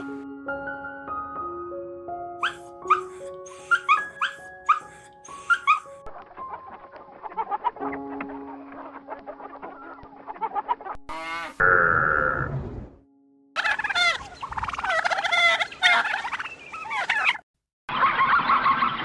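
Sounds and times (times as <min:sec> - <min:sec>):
fowl calling: 0:02.4 - 0:06.0, 0:13.6 - 0:17.4.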